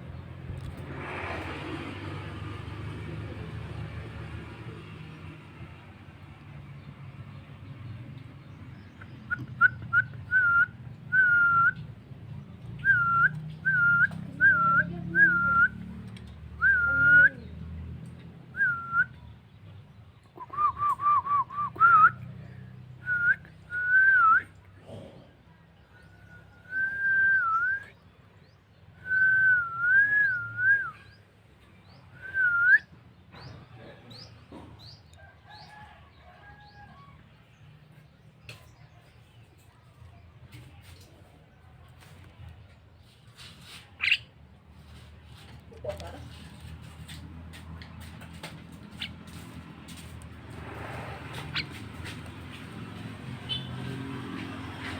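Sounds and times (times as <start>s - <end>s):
person whistling: 9.3s - 11.8s, 20.4s - 22.2s, 23.0s - 24.5s, 26.7s - 27.9s, 29.0s - 31.0s, 32.2s - 32.9s
bird chirps: 53.4s - 54.0s.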